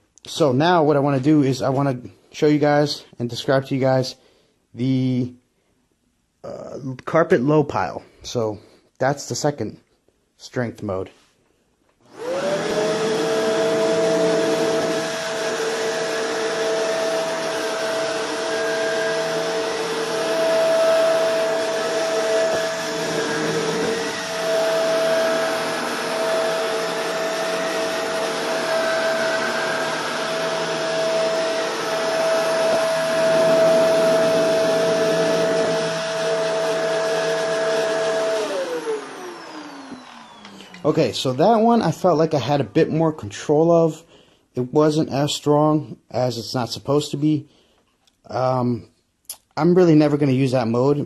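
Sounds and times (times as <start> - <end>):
vacuum cleaner running: 12.1 - 42.2.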